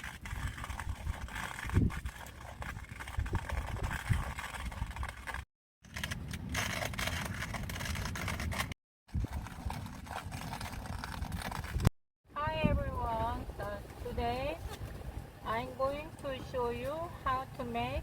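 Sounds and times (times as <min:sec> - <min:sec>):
wind buffeting microphone: 0:00.0 - 0:05.3, 0:09.1 - 0:17.0.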